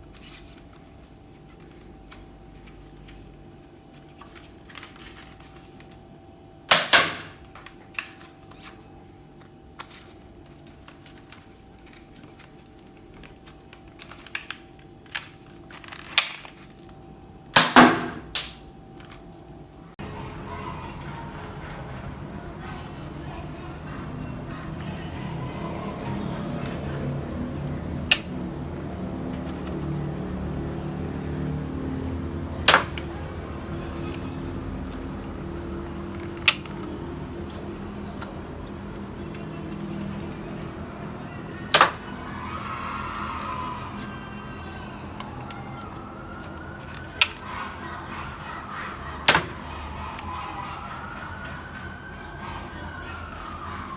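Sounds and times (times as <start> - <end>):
toy gun snapping: 6.7 - 7.6, 17.6 - 18.6, 49.3 - 49.5.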